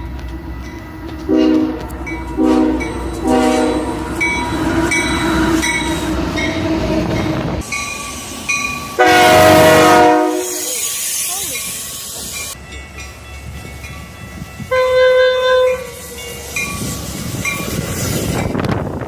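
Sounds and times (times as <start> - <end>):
passing train rumble: 0.0 - 19.0
locomotive air horn: 1.3 - 4.0, 9.0 - 10.8, 14.7 - 16.0
louder horn long blast: 1.3 - 4.0, 9.0 - 10.7, 14.7 - 15.9.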